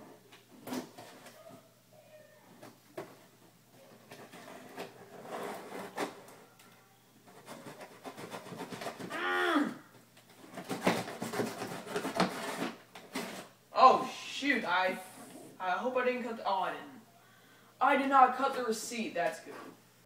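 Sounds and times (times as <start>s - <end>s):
person calling in background: 9.1s - 9.9s
cardboard box rustling: 10.4s - 13.6s
knife cutting tape and cardboard: 10.5s - 13.5s.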